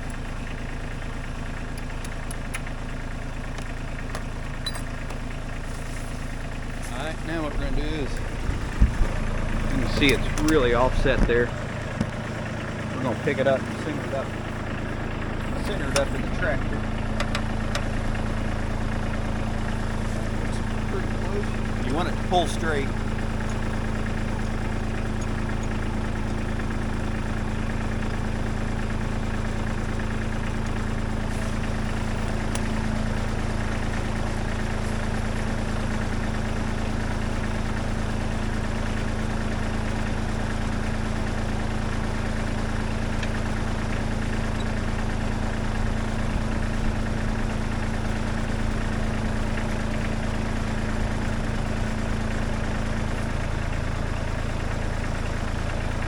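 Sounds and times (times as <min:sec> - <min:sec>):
diesel tractor engine idling: 0:00.0 - 0:56.0.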